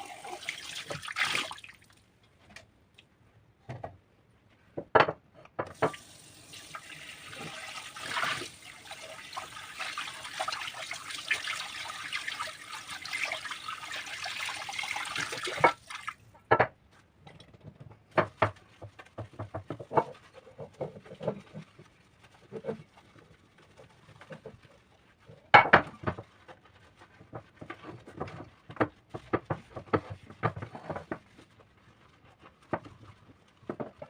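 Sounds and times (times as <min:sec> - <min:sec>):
tap water running into sink: 0:00.0 - 0:01.8, 0:05.7 - 0:16.2
kitchenware clicking and knocking: 0:04.8 - 0:06.0.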